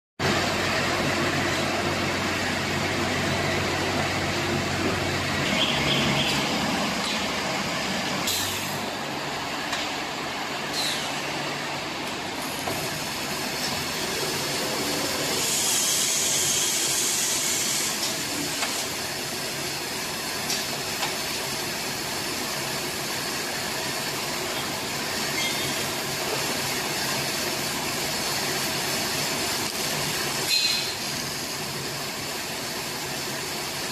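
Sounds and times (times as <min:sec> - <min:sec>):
high hiss: 0:14.2 - 0:18.1.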